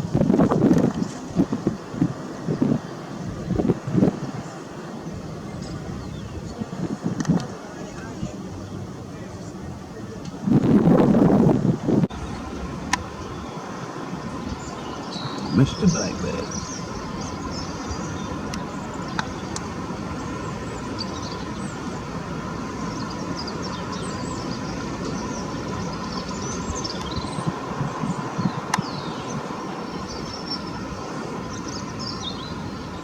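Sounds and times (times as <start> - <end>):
small birds chirping: 4.2 - 6.8, 12.1 - 33.0
low background rumble: 4.9 - 7.2, 7.8 - 33.0.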